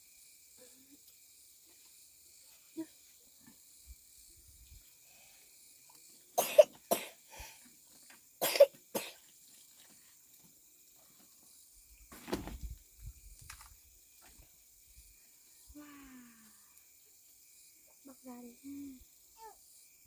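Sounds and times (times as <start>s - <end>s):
person coughing: 6.4s - 7.1s, 8.4s - 9.2s.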